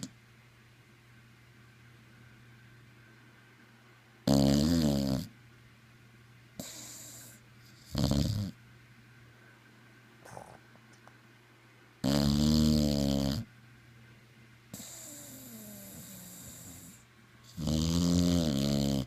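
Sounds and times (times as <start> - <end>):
low steady hum: 0.0 - 19.0
person snoring: 10.2 - 10.6, 12.0 - 13.4, 17.6 - 19.0.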